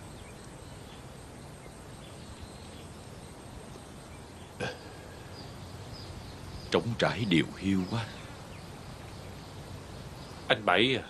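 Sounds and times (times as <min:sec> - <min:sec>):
background hiss: 0:00.0 - 0:11.0
faint high chirps: 0:00.0 - 0:11.0.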